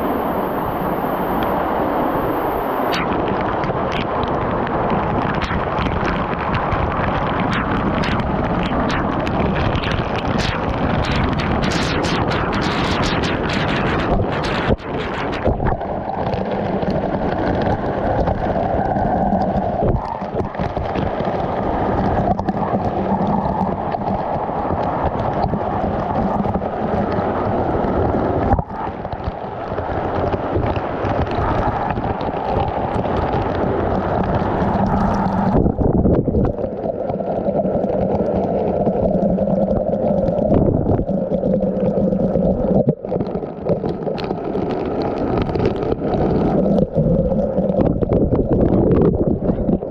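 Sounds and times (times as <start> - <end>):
stream and waterfall rushing: 0.0 - 3.0.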